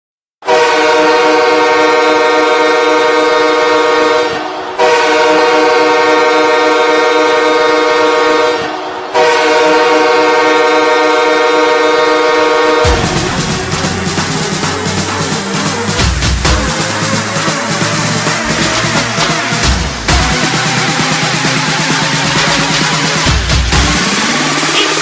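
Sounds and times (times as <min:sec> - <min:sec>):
hockey goal horn blasts: 0:00.4 - 0:14.4, 0:24.5 - 0:25.0.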